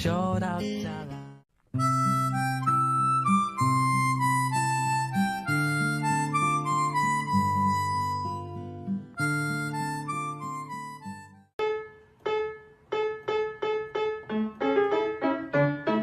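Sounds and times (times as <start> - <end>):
piano-like tune: 9.2 - 16.0.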